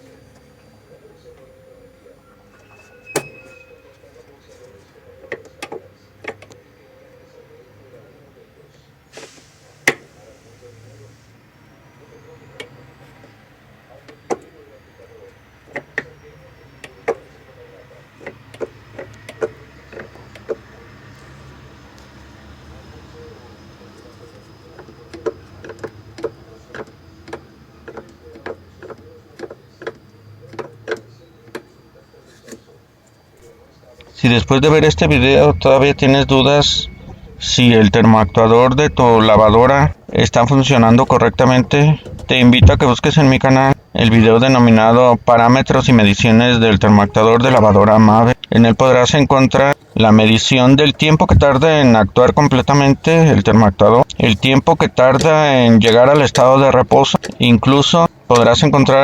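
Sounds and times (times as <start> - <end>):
faint steady hum: 0.0 - 59.0
low steady hum: 33.2 - 58.9.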